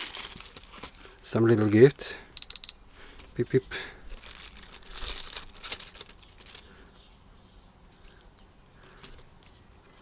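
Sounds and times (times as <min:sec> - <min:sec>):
rustling: 0:00.0 - 0:01.8, 0:04.1 - 0:06.8.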